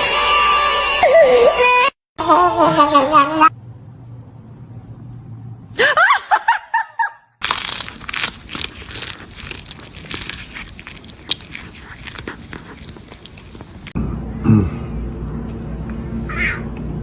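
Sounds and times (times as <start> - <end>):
crunching and crackling clicks: 7.4 - 14.0.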